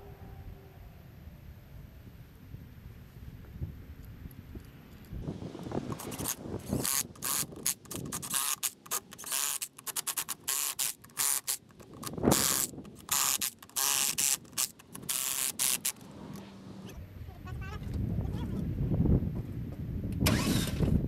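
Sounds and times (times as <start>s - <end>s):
ratchet wrench clicking: 5.9s - 16.1s.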